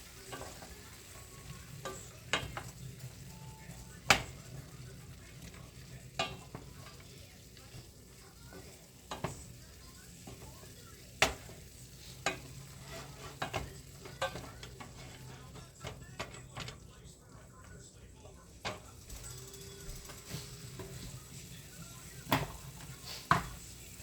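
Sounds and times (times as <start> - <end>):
soft sizzle: 0.0 - 24.0
spatula knocking against pan: 11.2 - 16.7.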